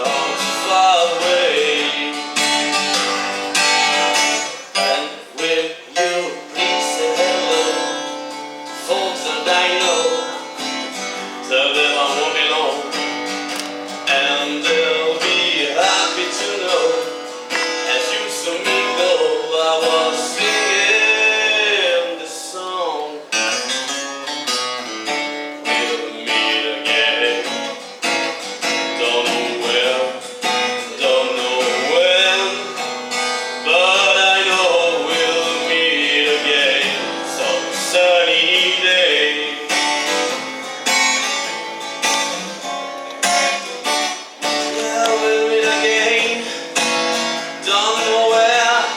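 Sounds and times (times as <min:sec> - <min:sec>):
person singing: 0:00.0 - 0:03.3, 0:04.7 - 0:10.5, 0:14.0 - 0:23.3, 0:28.9 - 0:32.8, 0:33.6 - 0:40.2, 0:44.5 - 0:48.9
strummed acoustic guitar: 0:00.0 - 0:48.9.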